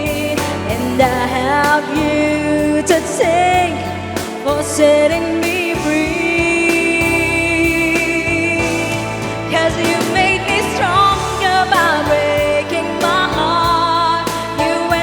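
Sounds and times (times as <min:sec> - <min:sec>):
backing track: 0:00.0 - 0:15.0
woman singing a pop ballad: 0:00.0 - 0:15.0.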